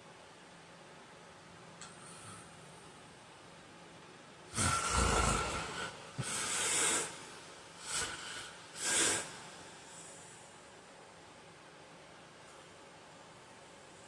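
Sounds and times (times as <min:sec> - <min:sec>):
man snoring: 0:04.5 - 0:07.2, 0:07.8 - 0:09.5
breathy breaths: 0:04.5 - 0:10.6.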